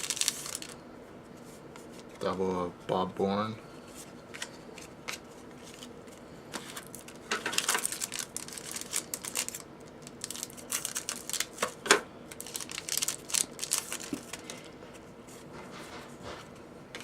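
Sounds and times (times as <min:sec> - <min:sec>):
wrapper tearing and crinkling: 0:00.0 - 0:00.8, 0:06.8 - 0:14.6.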